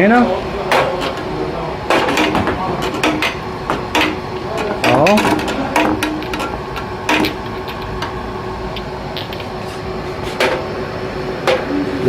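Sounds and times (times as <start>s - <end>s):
cap sealer machine humming: 0.0s - 12.0s
glass jars clicking and knocking: 1.9s - 8.1s, 8.8s - 9.6s.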